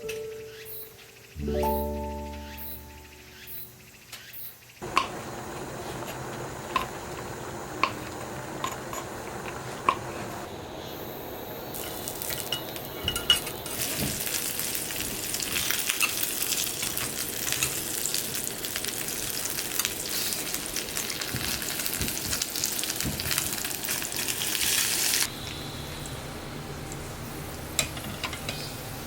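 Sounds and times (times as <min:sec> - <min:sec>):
food sizzling in a pan: 0:11.6 - 0:26.1.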